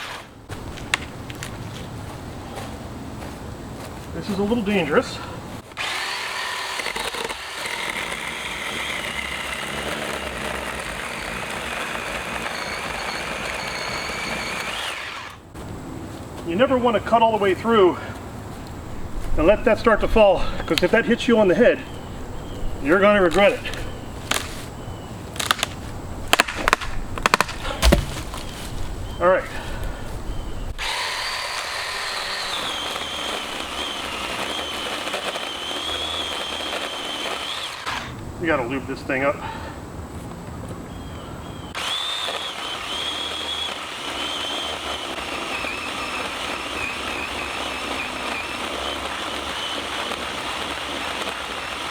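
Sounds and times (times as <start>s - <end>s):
chainsaw cutting a tree limb: 0.0s - 1.1s, 5.7s - 15.4s, 24.2s - 24.6s, 25.4s - 28.8s, 30.8s - 38.2s, 41.7s - 51.9s.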